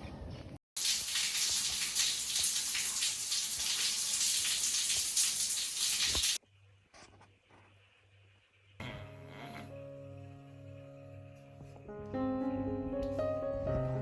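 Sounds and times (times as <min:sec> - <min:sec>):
water running from a tap: 0:00.8 - 0:06.4.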